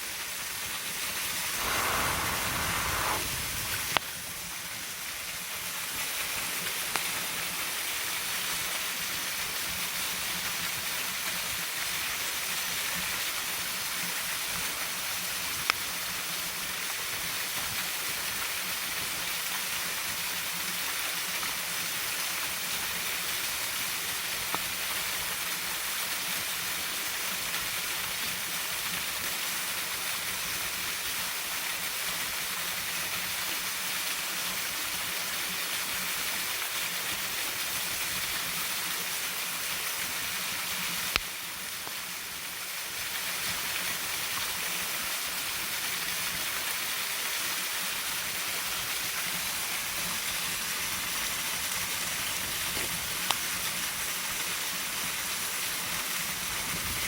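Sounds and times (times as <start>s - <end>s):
waterfall rushing: 1.4s - 4.3s.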